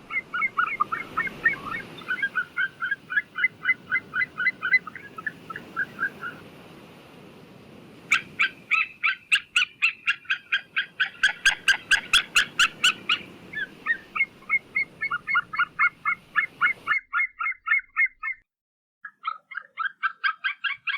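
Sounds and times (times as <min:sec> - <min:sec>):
eagle yelping calls: 0:00.0 - 0:06.4, 0:08.1 - 0:18.4, 0:19.0 - 0:20.9
low background hiss: 0:00.0 - 0:16.9.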